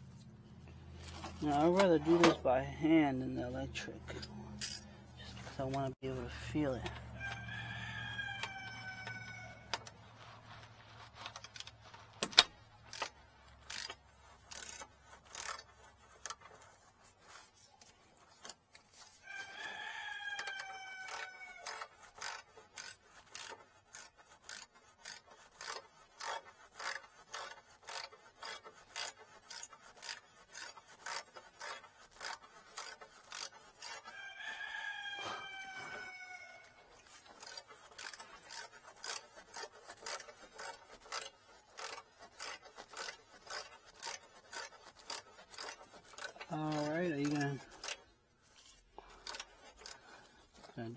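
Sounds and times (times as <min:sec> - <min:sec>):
hand ratchet clicking: 0:04.1 - 0:04.9, 0:06.6 - 0:18.8, 0:20.3 - 0:34.6, 0:36.9 - 0:50.8
rooster crowing: 0:06.6 - 0:09.9, 0:19.2 - 0:21.8, 0:34.0 - 0:36.9.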